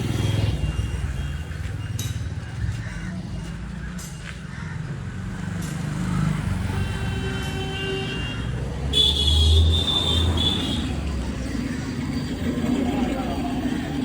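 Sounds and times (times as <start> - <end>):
vehicle horn: 6.6 - 11.0
passing engine rumble: 8.4 - 14.0.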